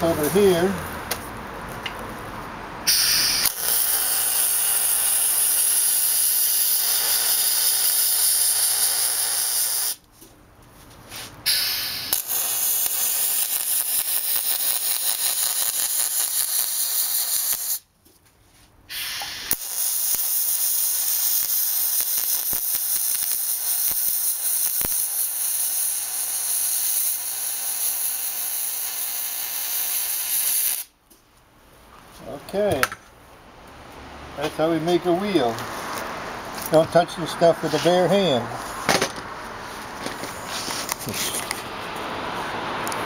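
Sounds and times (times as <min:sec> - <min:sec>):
arc welding: 0:00.0 - 0:00.9, 0:02.9 - 0:10.1, 0:11.5 - 0:17.9, 0:18.9 - 0:30.9.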